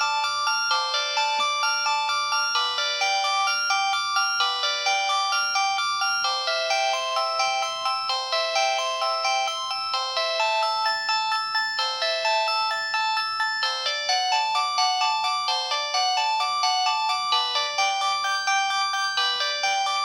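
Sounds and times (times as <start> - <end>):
polyphonic phone ringtone melody: 0.0 - 20.0.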